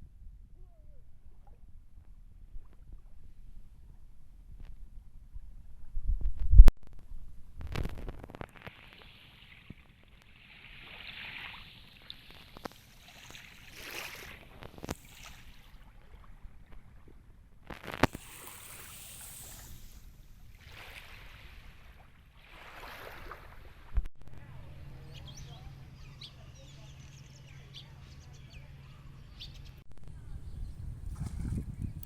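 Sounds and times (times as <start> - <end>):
sea water sloshing: 7.7 - 24.0.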